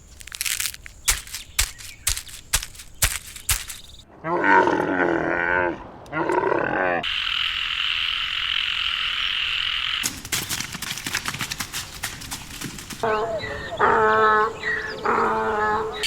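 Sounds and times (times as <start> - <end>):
wavering animal calls: 13.0 - 16.0.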